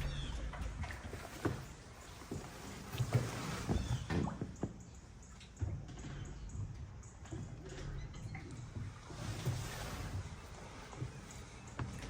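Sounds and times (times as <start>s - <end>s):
low engine rumble: 0.0s - 2.8s
water rushing past boat hull: 0.0s - 4.6s, 8.5s - 12.0s.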